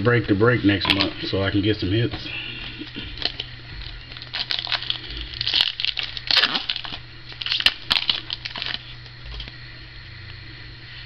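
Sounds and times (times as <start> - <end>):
low steady hum: 0.0 - 11.0
plastic wrapper crinkling and tearing: 2.8 - 9.6.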